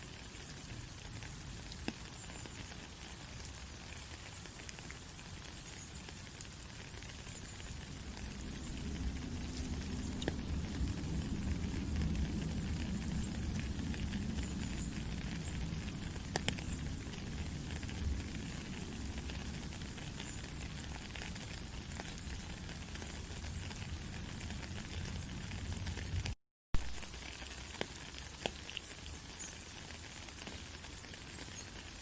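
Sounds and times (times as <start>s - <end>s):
rain falling in a forest: 0.0s - 32.0s
water drips ticking: 0.2s - 26.1s, 26.8s - 32.0s.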